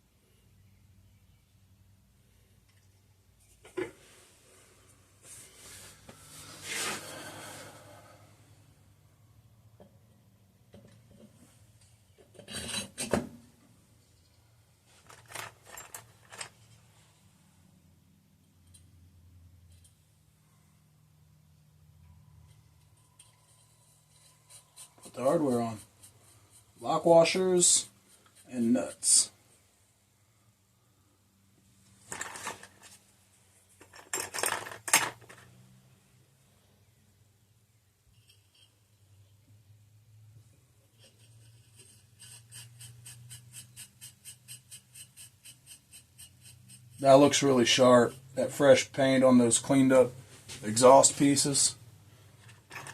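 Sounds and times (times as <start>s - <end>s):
metal parts scraping: 12.4s - 13.1s, 15.0s - 16.7s, 32.0s - 33.0s, 33.7s - 35.5s, 52.4s - 52.9s
metal washers and nuts clinking: 14.9s - 16.8s, 32.0s - 33.0s, 33.7s - 35.5s, 52.4s - 52.9s.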